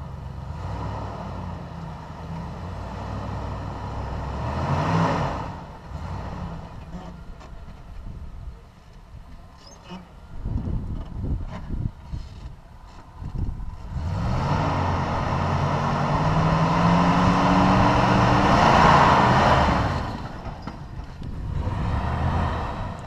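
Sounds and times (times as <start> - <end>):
engine revving under load: 0.0 - 7.3, 13.8 - 20.6, 21.3 - 23.0.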